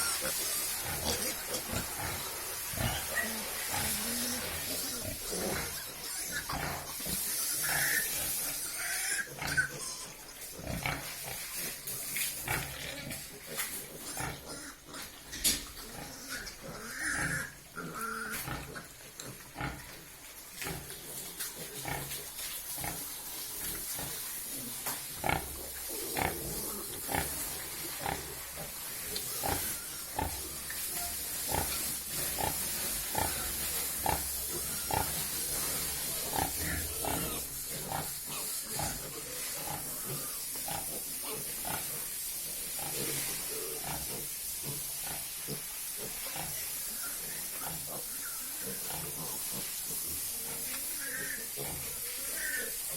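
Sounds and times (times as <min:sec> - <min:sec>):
pigs grunting: 0:00.0 - 0:20.0, 0:20.6 - 0:52.9
pigs squealing: 0:00.0 - 0:20.0, 0:29.2 - 0:32.6, 0:33.2 - 0:41.8, 0:46.1 - 0:49.2, 0:50.6 - 0:52.9.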